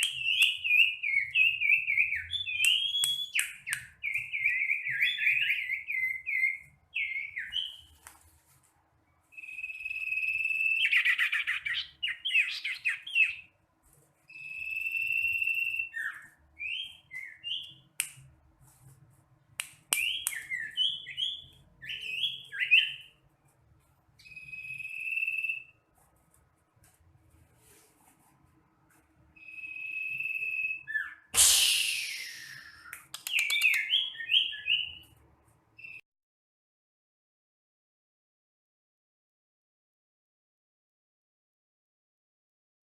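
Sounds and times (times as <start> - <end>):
bird song with whistles and trills: 0.0 - 8.0, 9.2 - 13.5, 14.3 - 18.0, 19.9 - 23.2, 24.2 - 25.8, 29.4 - 35.2, 35.8 - 36.0.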